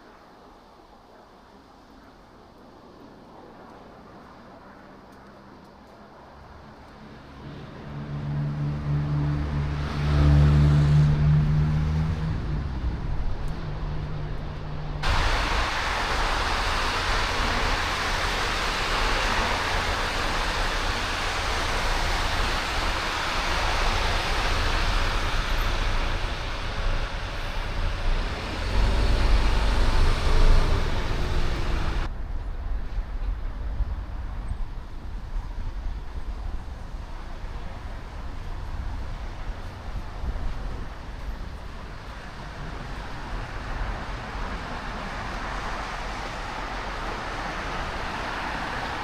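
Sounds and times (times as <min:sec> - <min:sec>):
passing traffic rushing: 0:03.5 - 0:49.0
vehicle engine humming: 0:06.4 - 0:32.5
heavy low rumble: 0:07.2 - 0:46.6.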